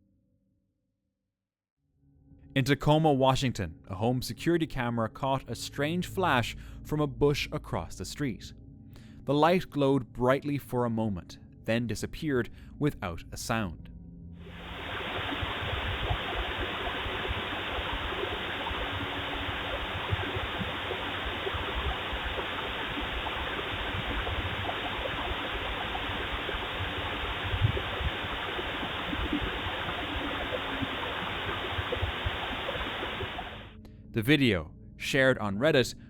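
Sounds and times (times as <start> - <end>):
steady microphone hiss: 14.5 - 33.7.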